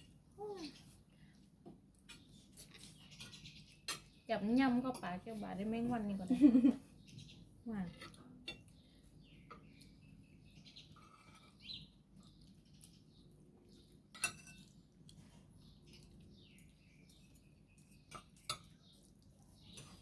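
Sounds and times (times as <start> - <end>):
cutlery clinking against dishes: 2.0 - 4.2, 14.1 - 14.9, 16.6 - 20.0.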